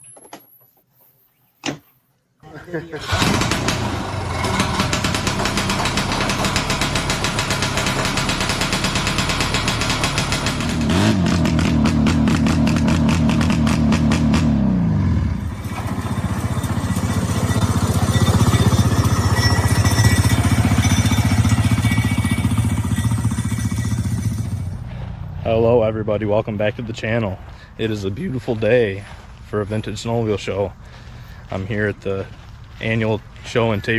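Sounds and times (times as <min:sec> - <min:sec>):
snowmobile engine revving: 0:02.9 - 0:24.9.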